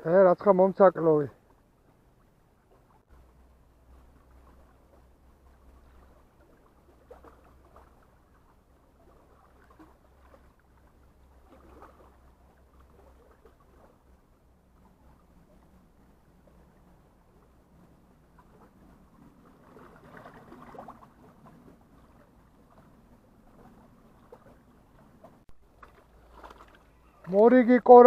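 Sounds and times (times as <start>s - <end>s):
water lapping: 0.1s - 28.0s.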